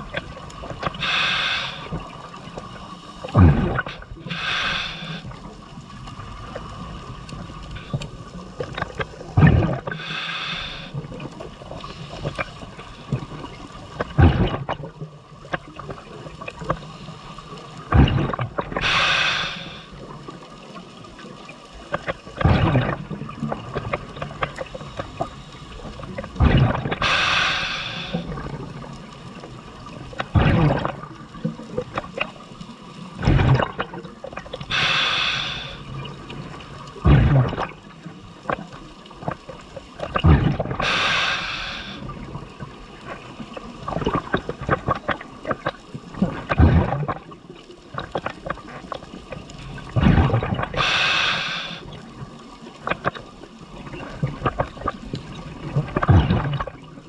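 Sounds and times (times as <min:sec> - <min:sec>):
exhaled bubbles rumbling: 0:00.0 - 0:57.0
hissing regulator inhales: 0:00.9 - 0:02.1, 0:02.9 - 0:05.4, 0:09.9 - 0:11.0, 0:18.8 - 0:20.0, 0:27.0 - 0:28.4, 0:34.6 - 0:35.9, 0:40.8 - 0:42.1, 0:50.8 - 0:52.0.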